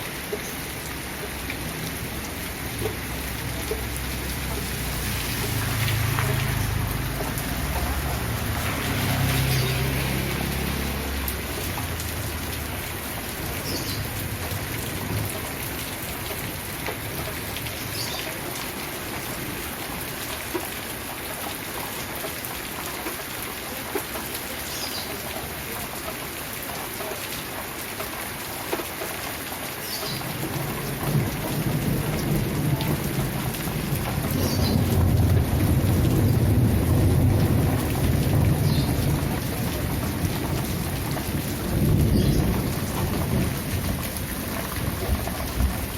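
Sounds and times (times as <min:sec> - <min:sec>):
steady rain: 0:00.0 - 0:45.9
low thunder rumbling: 0:30.9 - 0:45.9.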